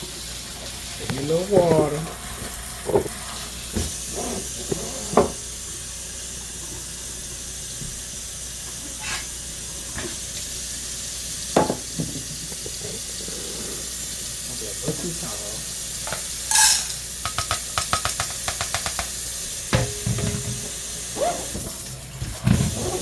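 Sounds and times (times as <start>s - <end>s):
tap water running into pot: 0.0s - 23.0s
pot knocks and clinks: 16.1s - 20.8s.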